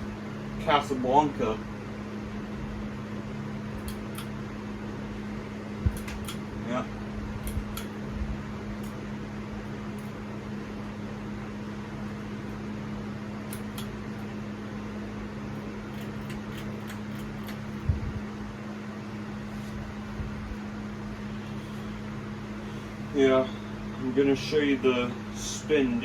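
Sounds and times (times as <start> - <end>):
ceiling fan motor hum: 0.0 - 26.0
rush of moving air: 17.8 - 18.3.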